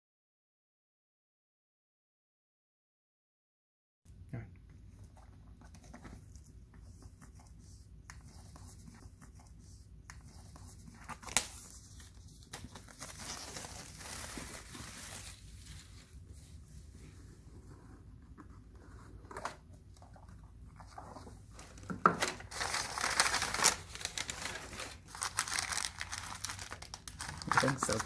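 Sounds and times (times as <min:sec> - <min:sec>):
packaging tearing and crinkling: 0:21.7 - 0:28.0.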